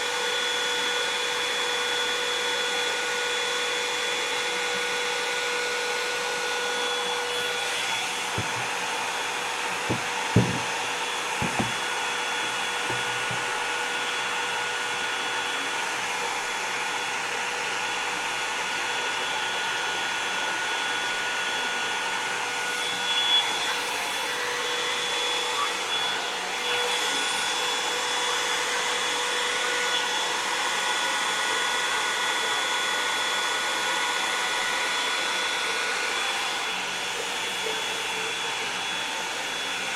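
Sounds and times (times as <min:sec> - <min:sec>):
hair dryer brush blowing: 0:04.2 - 0:31.4, 0:32.6 - 0:39.9
soft knocks: 0:08.3 - 0:08.8, 0:09.8 - 0:10.8, 0:11.4 - 0:11.9, 0:12.8 - 0:13.5.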